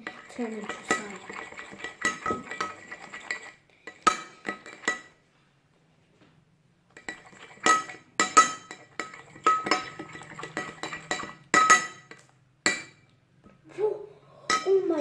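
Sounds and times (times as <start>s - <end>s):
spoon clinking against bowl: 0.0s - 5.1s, 7.0s - 13.1s, 14.5s - 15.0s
spoon stirring slime: 0.0s - 5.2s, 6.9s - 13.2s.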